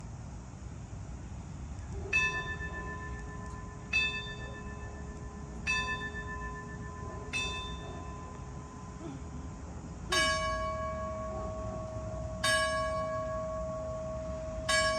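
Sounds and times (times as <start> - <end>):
church bell tolling: 2.1 - 9.0, 10.1 - 14.9.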